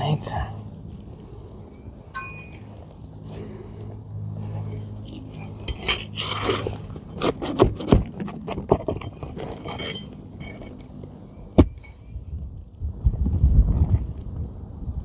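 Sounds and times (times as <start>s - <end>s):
metal tool scraping shingles: 5.6s - 10.8s.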